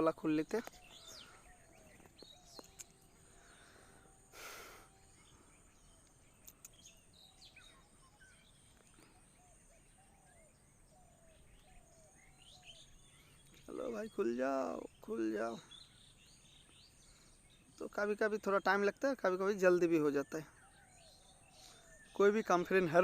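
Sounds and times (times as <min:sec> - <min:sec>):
faint bird chirps: 0:00.0 - 0:23.0
faint clicks: 0:01.9 - 0:03.2, 0:06.0 - 0:06.9.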